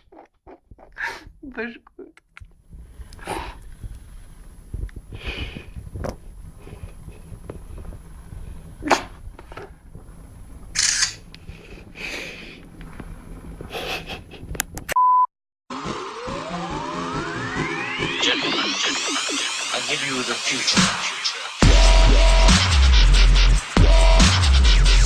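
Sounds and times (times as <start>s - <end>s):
rustles and knocks: 2.7s - 10.7s.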